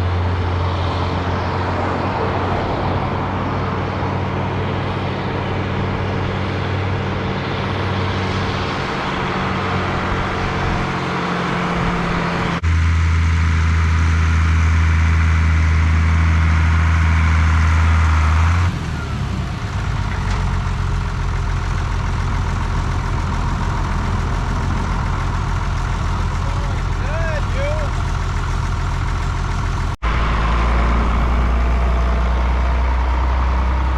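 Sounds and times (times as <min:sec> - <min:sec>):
heavy machinery engines running: 0:00.0 - 0:33.9
deep hum: 0:20.5 - 0:27.0, 0:27.9 - 0:33.9.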